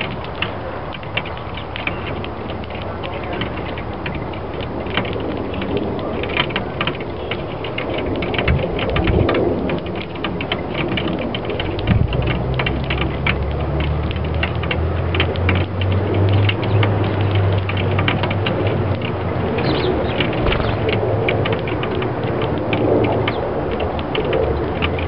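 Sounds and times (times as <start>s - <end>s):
low hum: 16.0s - 25.0s.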